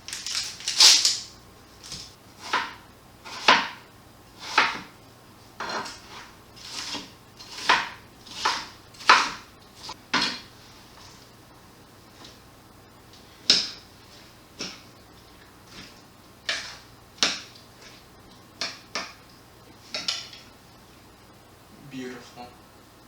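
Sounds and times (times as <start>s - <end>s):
knife slicing onion on cutting board: 1.9s - 3.8s, 4.4s - 4.9s, 5.6s - 10.5s, 14.6s - 14.9s, 15.7s - 18.0s.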